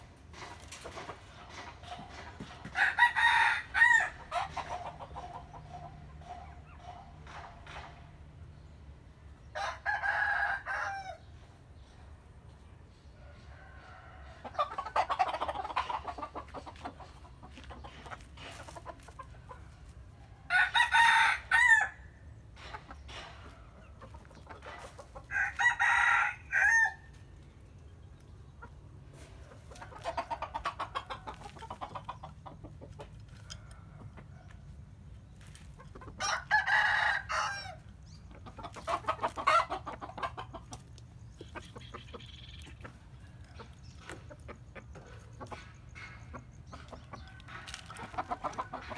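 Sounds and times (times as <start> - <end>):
roosters crowing: 1.8 - 5.8, 9.5 - 11.3, 13.2 - 16.7, 20.1 - 22.7, 24.6 - 27.4, 35.9 - 40.4, 46.9 - 48.9.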